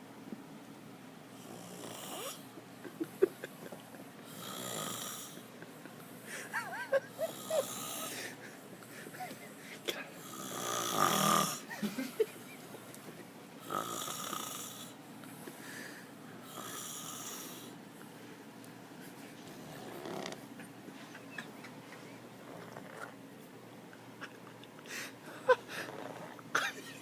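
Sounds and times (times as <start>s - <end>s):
man snoring: 1.4s - 2.4s, 4.3s - 5.4s, 7.2s - 8.2s, 10.2s - 11.7s, 13.6s - 15.0s, 16.4s - 17.8s, 19.8s - 20.4s.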